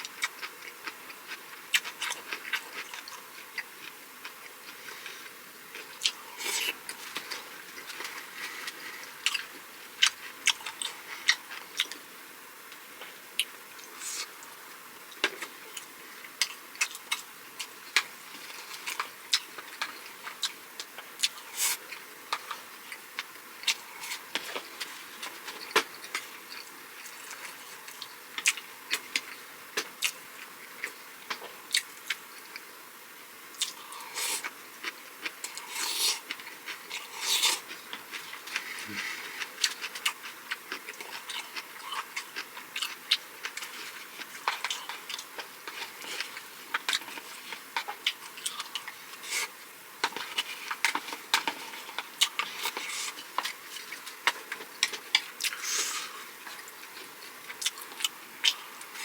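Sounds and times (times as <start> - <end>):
food being chewed: 0.0 - 12.1, 12.7 - 32.8, 33.5 - 59.0.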